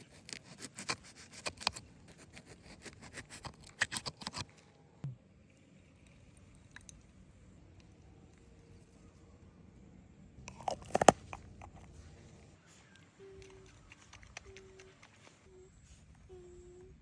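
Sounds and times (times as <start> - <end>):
sharp crunching cracks: 10.5 - 11.9.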